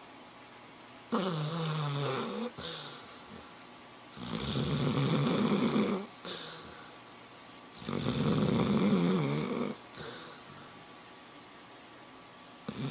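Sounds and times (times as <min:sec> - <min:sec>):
dog snoring: 0:01.1 - 0:03.5, 0:04.2 - 0:06.9, 0:07.8 - 0:10.7, 0:12.6 - 0:12.9.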